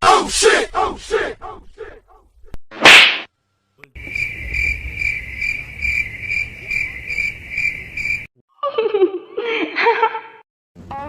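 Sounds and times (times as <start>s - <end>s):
crickets chirping: 4.0s - 8.3s.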